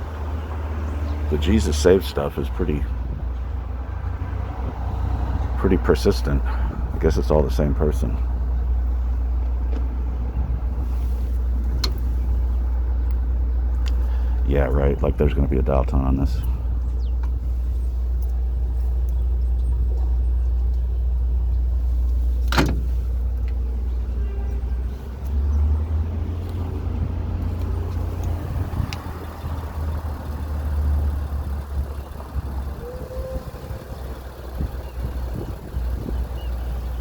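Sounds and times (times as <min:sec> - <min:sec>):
wind buffeting microphone: 0:26.3 - 0:37.0.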